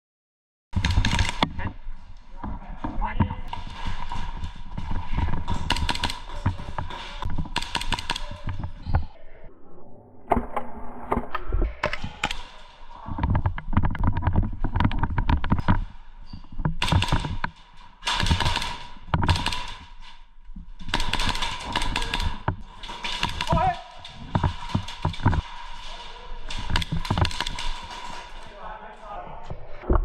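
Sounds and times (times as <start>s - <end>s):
airsoft guns firing in bursts: 0.8s - 1.7s, 3.5s - 8.6s, 16.8s - 20.0s, 20.8s - 28.4s
knocks and thuds: 11.8s - 15.9s, 16.5s - 20.0s, 20.7s - 28.4s.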